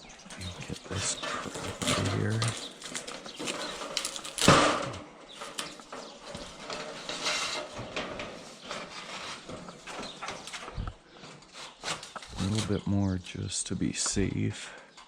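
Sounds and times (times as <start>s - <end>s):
shingles clicking and rustling: 0.2s - 14.3s.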